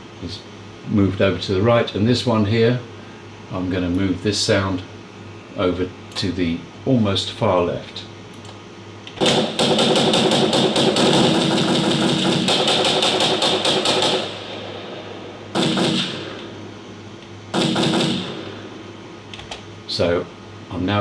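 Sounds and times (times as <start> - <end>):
machine-gun fire: 9.2 - 16.6, 17.5 - 18.7.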